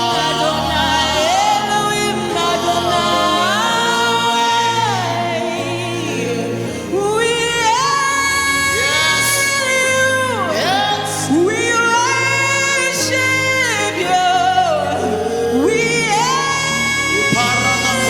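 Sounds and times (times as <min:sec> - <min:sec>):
person singing gospel: 0:00.0 - 0:18.0
low instrumental backing: 0:14.1 - 0:18.0.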